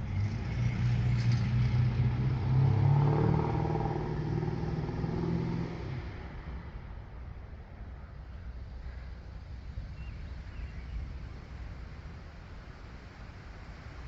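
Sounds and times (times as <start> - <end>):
vehicle engine passing by: 0.0 - 6.1.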